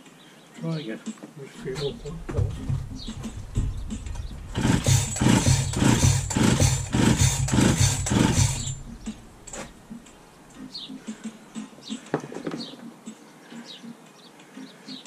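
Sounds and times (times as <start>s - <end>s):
chainsaw engine cranking: 4.6s - 8.8s.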